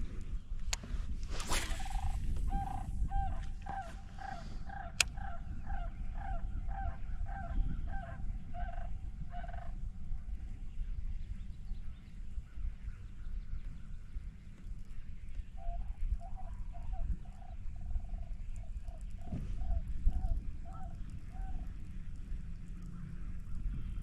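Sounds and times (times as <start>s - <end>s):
bird calling hollow notes: 1.5s - 8.8s.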